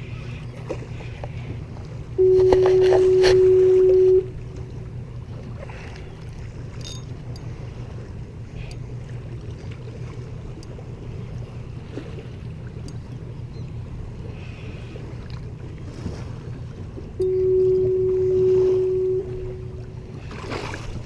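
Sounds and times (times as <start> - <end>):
boat motor rumbling: 0.0 - 21.0
loud steady tone: 2.2 - 4.7, 17.2 - 20.2.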